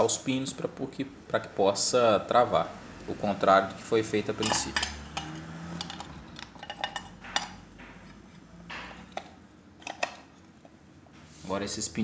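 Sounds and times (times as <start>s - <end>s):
metal parts clinking: 4.4s - 7.7s, 8.8s - 10.3s.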